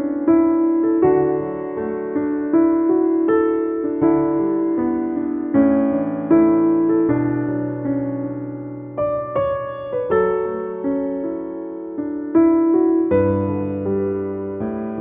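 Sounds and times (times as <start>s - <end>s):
gentle piano chords: 0.0s - 15.0s.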